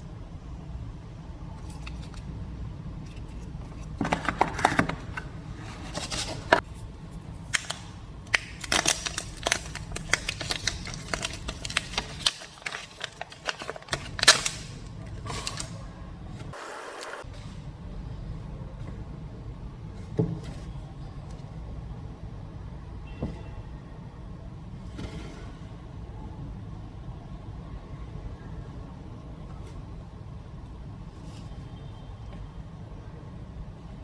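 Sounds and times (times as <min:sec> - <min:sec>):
packaging rustling: 0:07.5 - 0:15.8.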